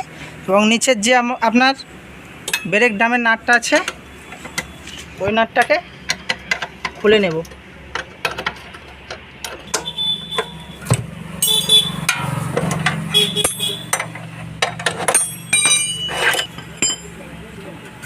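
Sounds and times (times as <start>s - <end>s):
metal tools clinking and ringing: 12.1s - 17.4s.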